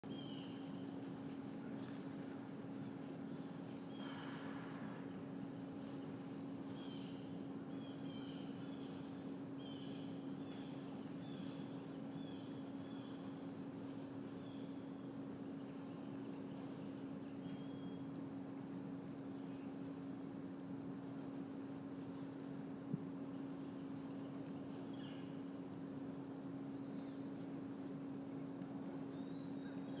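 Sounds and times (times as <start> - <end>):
steady low hum: 0.0 - 30.0
small birds chirping: 0.1 - 13.2.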